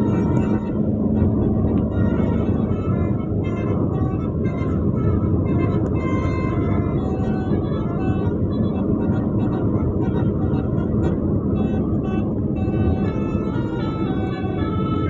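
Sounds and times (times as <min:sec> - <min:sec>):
motorcycle engine and wind rumble: 0:00.0 - 0:15.0.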